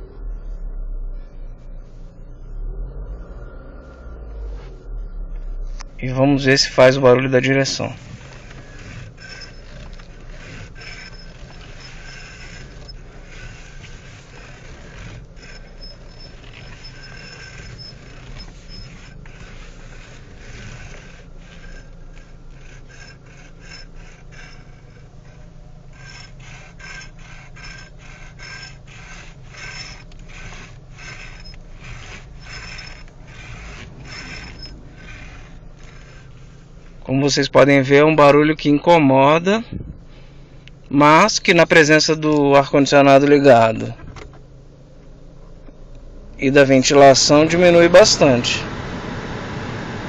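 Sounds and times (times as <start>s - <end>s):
car engine idling: 0.0s - 50.0s
power steering rapid clicking: 5.8s - 37.8s.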